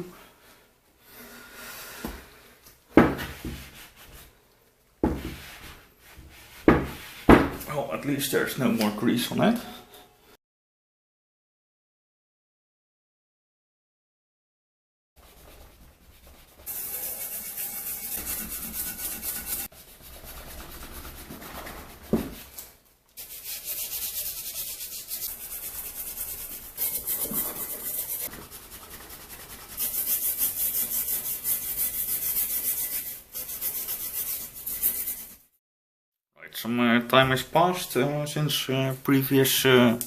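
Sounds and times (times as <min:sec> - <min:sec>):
hand scrubbing metal: 0:15.2 - 0:22.5, 0:23.2 - 0:35.4.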